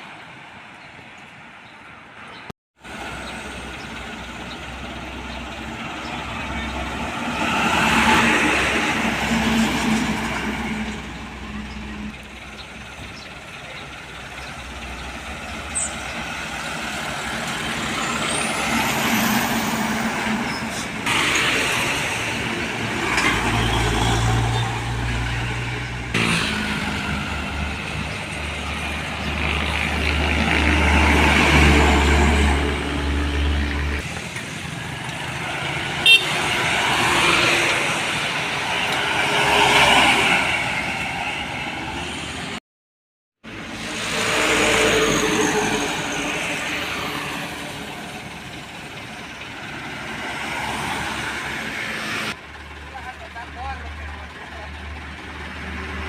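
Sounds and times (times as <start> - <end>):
heavy diesel trucks passing: 0.0 - 42.6, 43.4 - 56.0.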